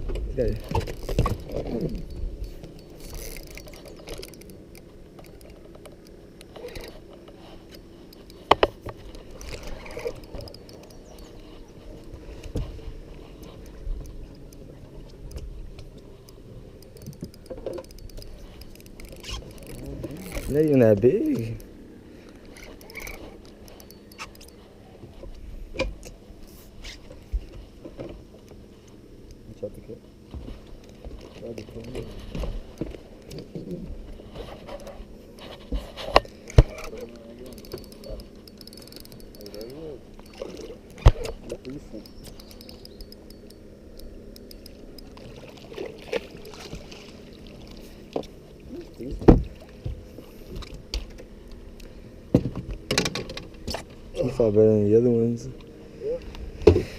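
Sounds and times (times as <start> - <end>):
low steady rumble: 0.0 - 56.9
fishing reel ratcheting: 0.6 - 12.1, 13.4 - 21.7, 22.3 - 24.6, 36.2 - 45.5.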